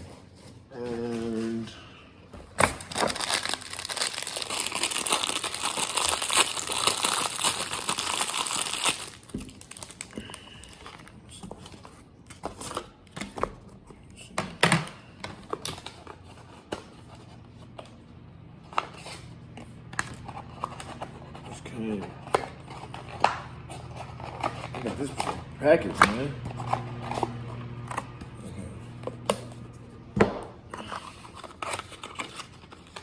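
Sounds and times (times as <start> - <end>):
packaging crinkling and tearing: 2.5 - 11.4, 30.8 - 33.0.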